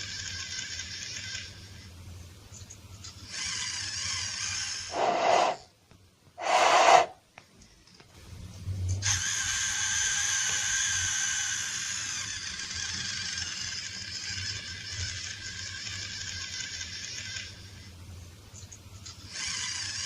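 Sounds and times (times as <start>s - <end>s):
long breathy hiss: 4.9s - 5.6s, 6.4s - 7.2s.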